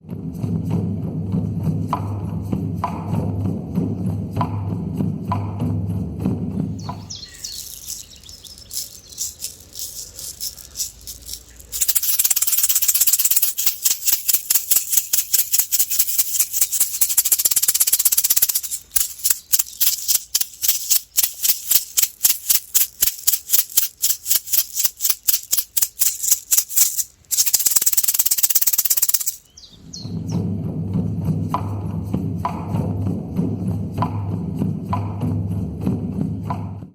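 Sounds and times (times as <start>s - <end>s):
shaman rattle shaking: 6.8s - 29.5s.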